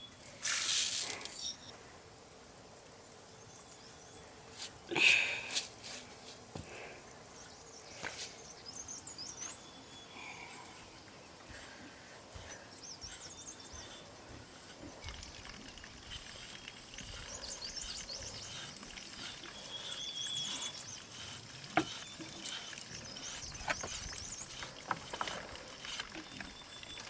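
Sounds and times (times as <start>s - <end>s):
birds chirping: 6.6s - 27.0s
high insect drone: 7.2s - 27.0s.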